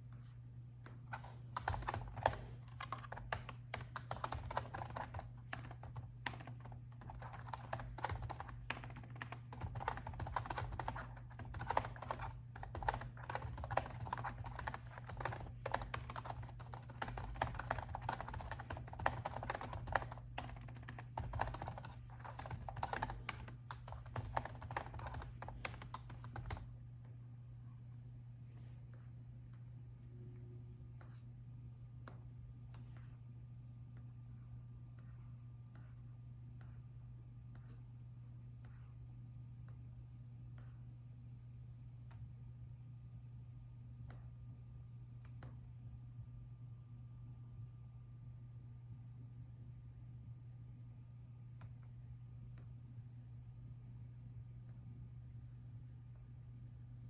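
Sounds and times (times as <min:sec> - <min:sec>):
typing on laptop keyboard: 0:01.6 - 0:26.7.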